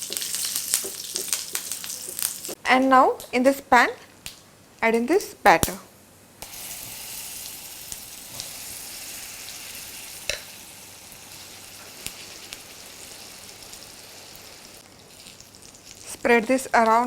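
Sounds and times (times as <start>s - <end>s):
batter sizzling in hot oil: 0.0s - 2.6s, 6.4s - 17.0s.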